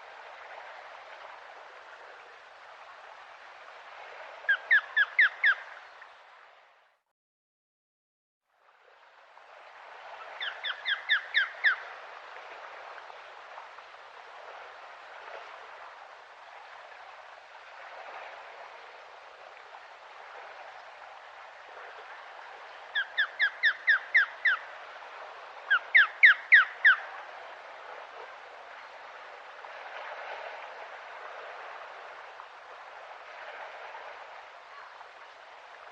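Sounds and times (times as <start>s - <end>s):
osprey whistled calls: 4.5s - 5.7s, 10.4s - 11.9s, 22.9s - 24.6s, 25.7s - 27.0s.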